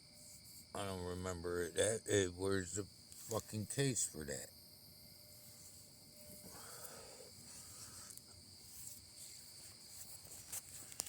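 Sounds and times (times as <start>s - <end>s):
crickets chirping: 0.0s - 11.0s
soft handling rustling: 7.4s - 11.0s.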